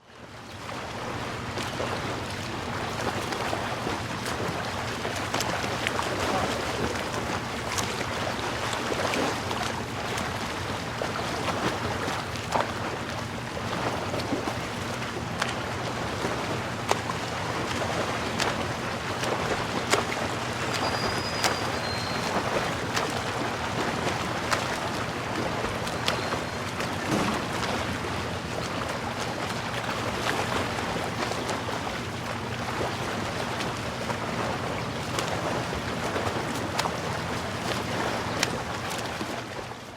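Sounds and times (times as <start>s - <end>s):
low steady hum: 0.0s - 39.9s
surf washing: 0.0s - 39.9s
wind: 0.0s - 39.9s.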